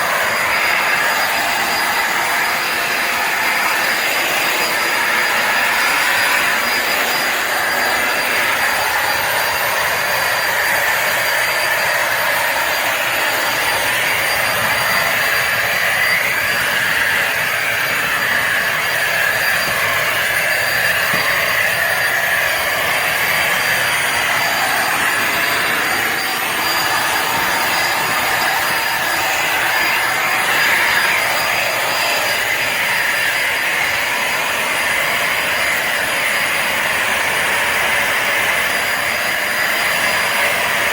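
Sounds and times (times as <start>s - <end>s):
vacuum motor running: 0.0s - 40.9s.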